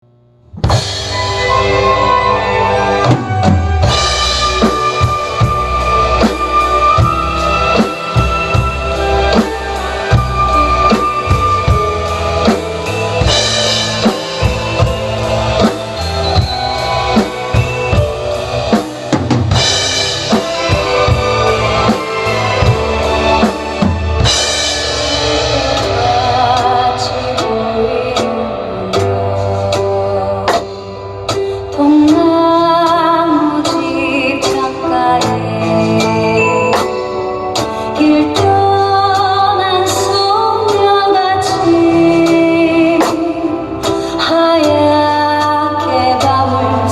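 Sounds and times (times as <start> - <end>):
ballad backing track: 0.4 - 46.9
drum kit playing: 0.4 - 46.9
cymbal crashes: 3.4 - 26.4.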